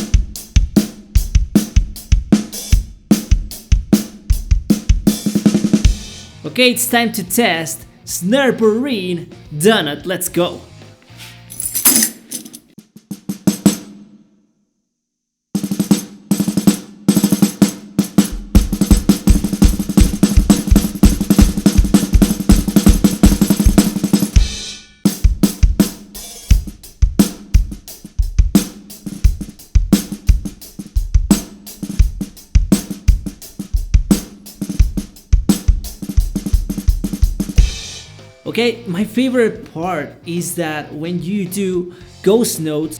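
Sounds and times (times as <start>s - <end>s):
bass drum: 0.0s - 6.4s, 18.1s - 24.6s, 25.3s - 38.1s
snare drum with jingles: 17.2s - 24.4s.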